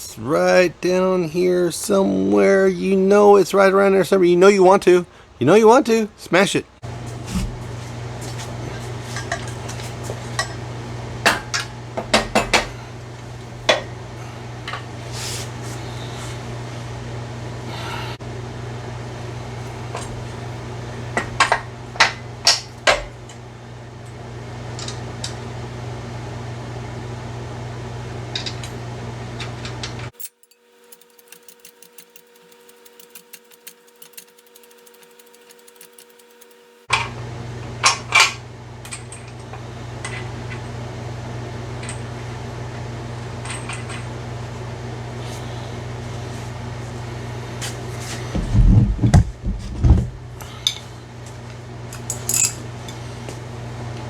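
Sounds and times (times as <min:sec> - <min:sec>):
steady low hum: 0:00.0 - 0:54.0
metal tools clinking and clanking: 0:08.8 - 0:10.6, 0:43.4 - 0:44.1, 0:52.0 - 0:53.0.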